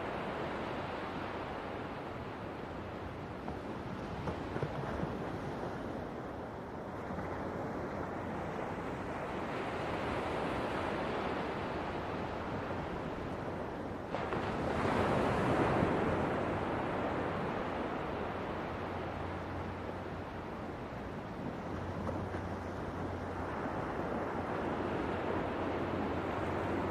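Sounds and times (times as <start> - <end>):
ocean waves washing: 0.0 - 26.9.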